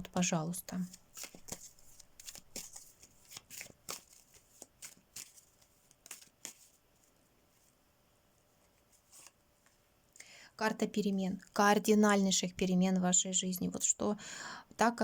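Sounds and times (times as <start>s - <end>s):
cards being shuffled: 0.7s - 7.7s, 8.7s - 9.4s.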